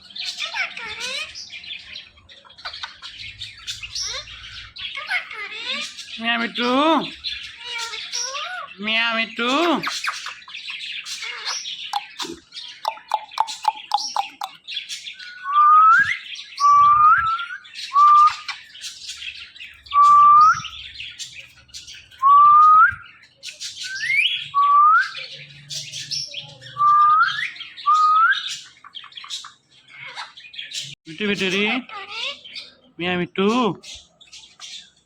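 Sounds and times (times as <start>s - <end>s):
parrot whistling and chirping: 11.2s - 18.7s, 19.7s - 20.9s, 22.1s - 25.4s, 26.2s - 29.5s.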